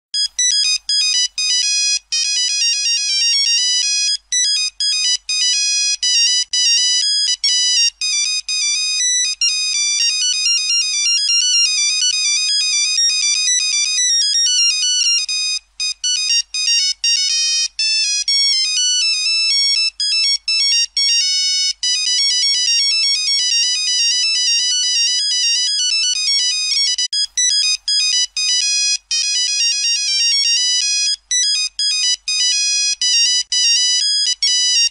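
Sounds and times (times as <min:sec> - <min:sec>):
mobile phone ringtone melody: 0:00.2 - 0:34.9.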